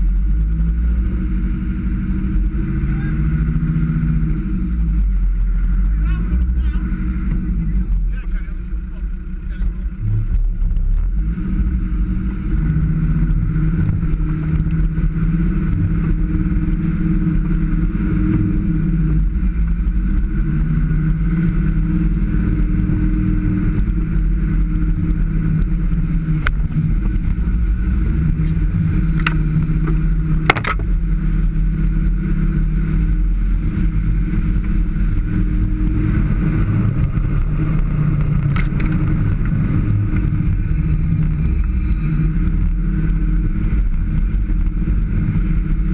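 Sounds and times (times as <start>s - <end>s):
engine running at low revs: 0.0s - 45.9s.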